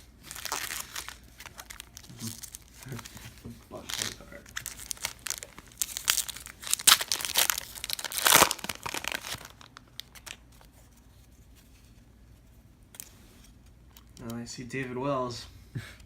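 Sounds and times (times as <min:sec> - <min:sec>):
foil wrapper tearing and crinkling: 0:00.2 - 0:10.7.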